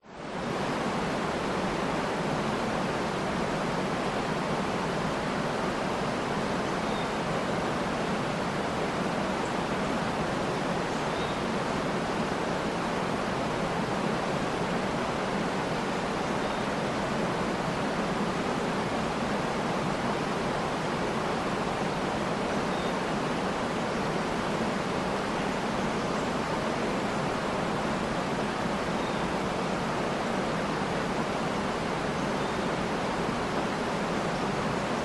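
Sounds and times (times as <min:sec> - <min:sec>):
waterfall rushing: 0:00.2 - 0:35.0
faint bird chirps: 0:06.6 - 0:07.2, 0:10.9 - 0:11.5, 0:22.6 - 0:23.0, 0:28.9 - 0:29.5, 0:32.2 - 0:32.7.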